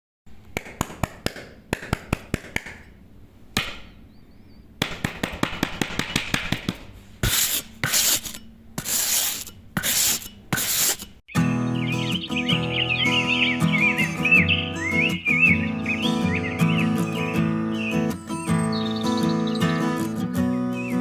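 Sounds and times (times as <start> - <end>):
abrasive rubbing on wood: 7.2 - 11.2.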